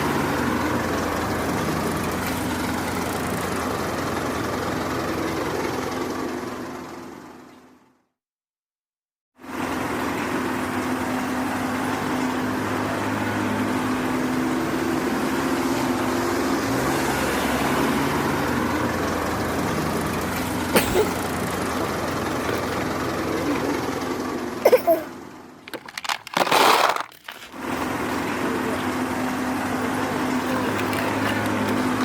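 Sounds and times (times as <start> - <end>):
construction vehicle engine running: 0.0 - 7.9, 9.4 - 32.0
metal clanks: 20.8 - 24.8, 29.8 - 32.0.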